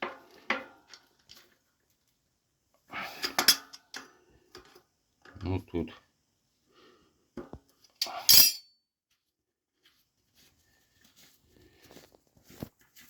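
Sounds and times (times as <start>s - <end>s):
metal tools clinking: 8.0s - 8.7s.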